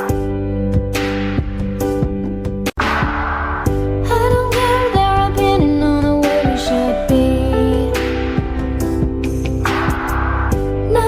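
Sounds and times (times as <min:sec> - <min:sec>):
pop song with singing: 0:03.9 - 0:11.0.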